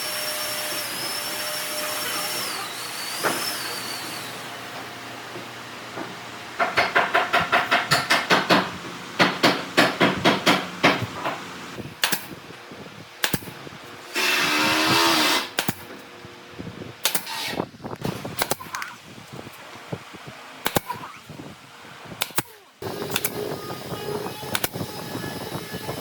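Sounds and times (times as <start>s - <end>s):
machine running: 22.8s - 26.0s.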